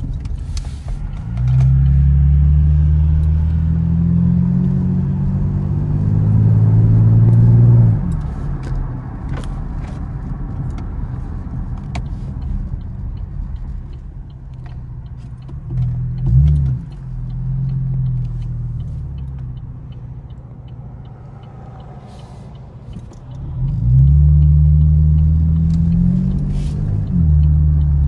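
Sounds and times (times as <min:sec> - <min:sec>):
car engine revving and accelerating: 0:00.0 - 0:13.9, 0:15.1 - 0:28.0.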